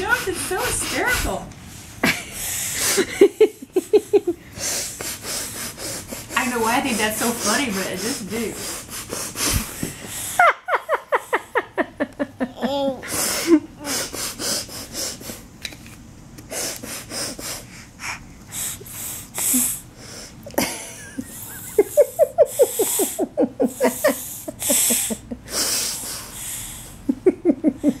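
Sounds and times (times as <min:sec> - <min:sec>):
laughter: 0:02.9 - 0:04.4, 0:10.4 - 0:12.8, 0:20.6 - 0:25.4, 0:27.1 - 0:28.0
girl sniffing through nose: 0:04.6 - 0:06.4, 0:07.4 - 0:10.4, 0:13.1 - 0:15.5, 0:16.5 - 0:20.4, 0:24.1 - 0:27.0.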